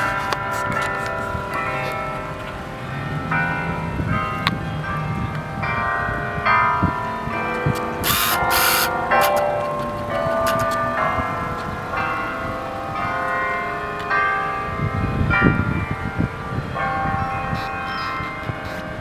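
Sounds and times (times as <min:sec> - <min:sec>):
church bells ringing: 0:00.0 - 0:19.0.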